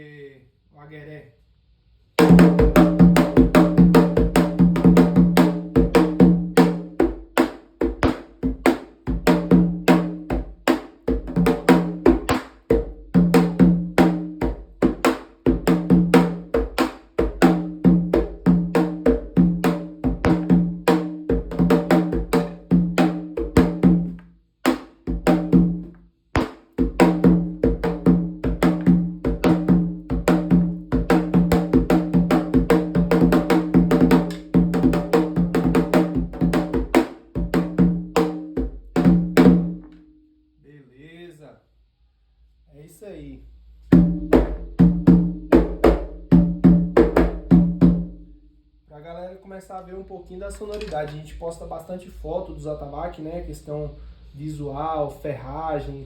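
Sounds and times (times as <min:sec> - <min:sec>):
sharp hand drum strikes: 0:02.2 - 0:40.0, 0:43.9 - 0:48.2.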